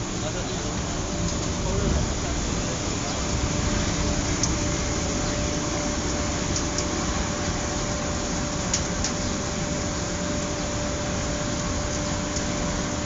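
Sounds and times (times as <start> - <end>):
burner blower and flame rushing: 0.0 - 13.0.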